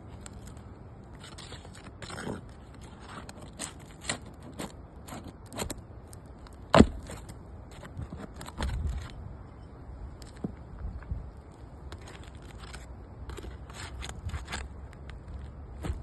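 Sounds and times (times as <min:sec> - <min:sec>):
shingles clicking and scraping: 0:00.1 - 0:09.2.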